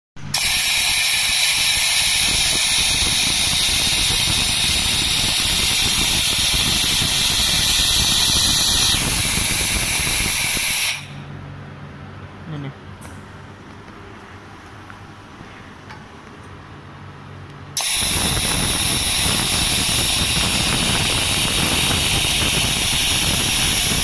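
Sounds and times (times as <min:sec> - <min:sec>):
laser welder hiss: 0:00.3 - 0:11.2, 0:17.8 - 0:24.0.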